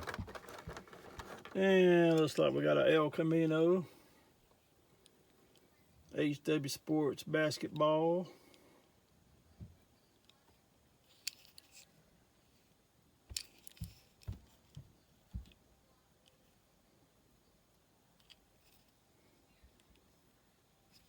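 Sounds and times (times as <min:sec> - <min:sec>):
toy cars and packaging clicking: 0:00.0 - 0:02.4.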